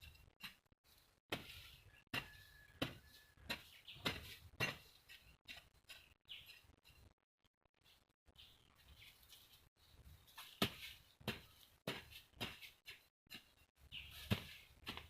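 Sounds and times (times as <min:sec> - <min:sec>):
hoe striking soil: 0:01.3 - 0:06.6, 0:10.4 - 0:15.0
bird chirp: 0:01.8 - 0:04.3, 0:05.9 - 0:07.1, 0:07.9 - 0:09.4, 0:13.8 - 0:14.7.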